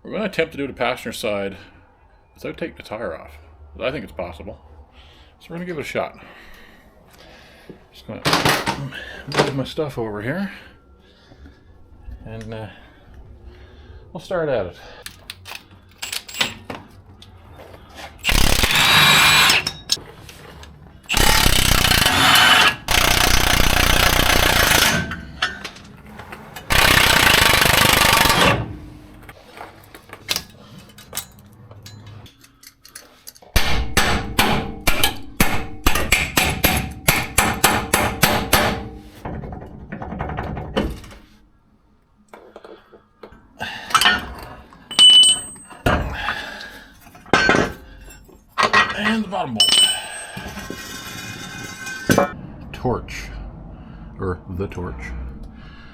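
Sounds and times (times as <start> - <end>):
impact wrench hammering: 18.2 - 20.0, 21.1 - 29.4, 33.6 - 39.0.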